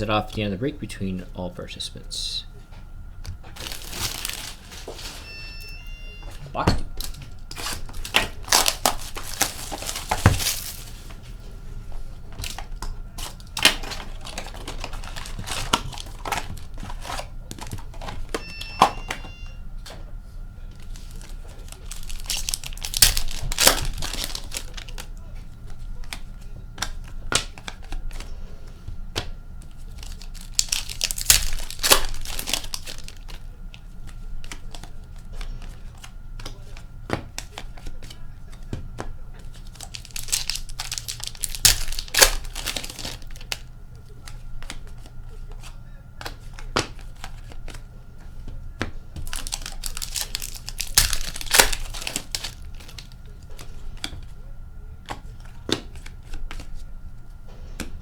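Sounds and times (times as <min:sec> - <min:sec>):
cards rustling and clicking: 0:02.0 - 0:58.0
foil packs torn and crinkled: 0:03.5 - 0:05.7, 0:07.0 - 0:11.2, 0:12.0 - 0:19.3, 0:20.8 - 0:26.2, 0:29.6 - 0:36.7, 0:39.4 - 0:43.7, 0:49.1 - 0:54.2.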